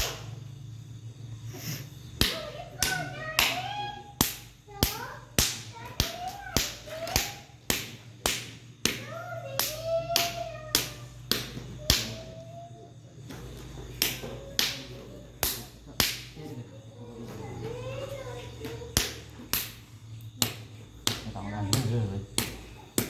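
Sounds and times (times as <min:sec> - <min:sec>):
hand slapping a body: 0:00.0 - 0:00.3, 0:02.2 - 0:12.4, 0:13.4 - 0:16.4, 0:18.6 - 0:23.0.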